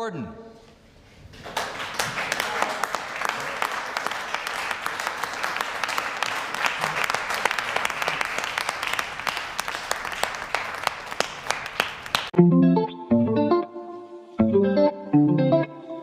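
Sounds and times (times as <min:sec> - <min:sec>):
audience applauding: 0:01.3 - 0:12.4
electric guitar music: 0:12.4 - 0:16.0.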